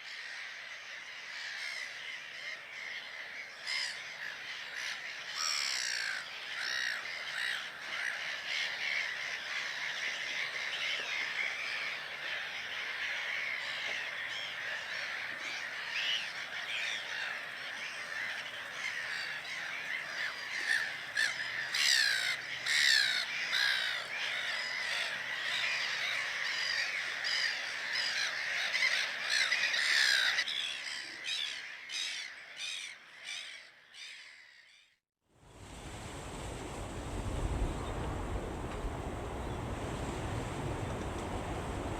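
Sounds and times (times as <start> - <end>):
flock of birds cawing: 0.0 - 34.9, 36.0 - 41.9.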